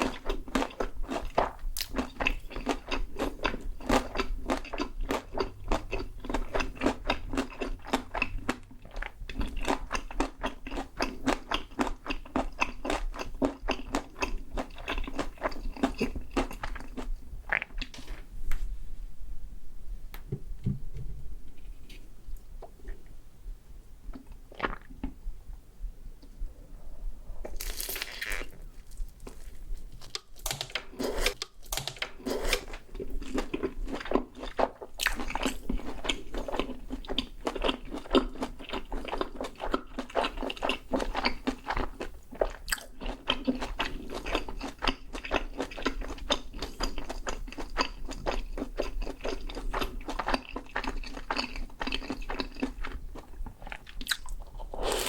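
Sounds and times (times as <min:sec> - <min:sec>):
crunchy food chewing: 0:27.5 - 0:55.0.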